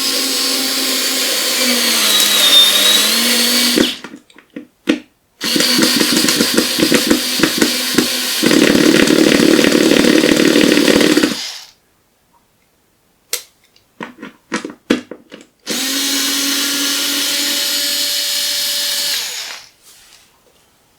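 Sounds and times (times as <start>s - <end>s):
cordless drill motor running: 0.0s - 4.0s, 5.4s - 11.7s, 15.7s - 19.7s
drill clicks: 0.0s - 4.1s, 5.4s - 11.7s, 15.7s - 19.7s.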